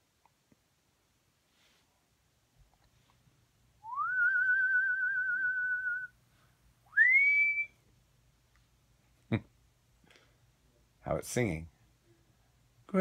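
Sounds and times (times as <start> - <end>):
person whistling: 3.8 - 6.1, 6.9 - 7.8.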